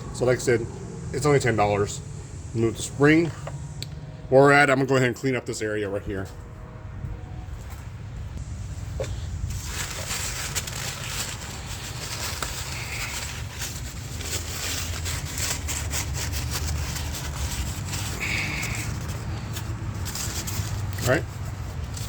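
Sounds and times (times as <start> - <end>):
steady low hum: 0.0 - 22.0
scrubbing and scraping: 9.0 - 22.0.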